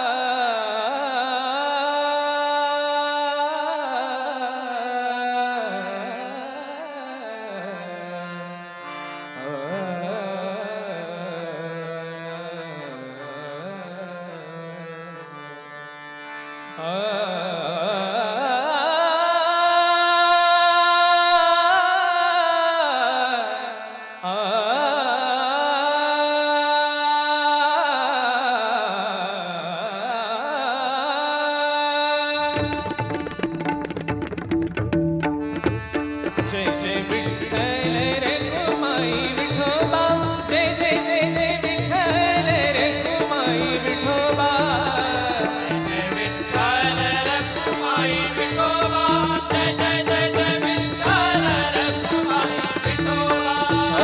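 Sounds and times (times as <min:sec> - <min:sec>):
tabla: 0:00.0 - 0:54.0
instrumental accompaniment: 0:32.6 - 0:54.0
wordless singing in long held notes: 0:43.1 - 0:54.0.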